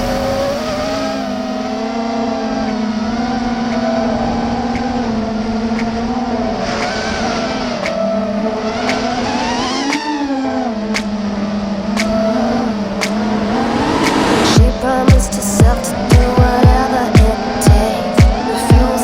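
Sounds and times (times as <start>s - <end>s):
drone motors whining: 7.7s - 14.7s.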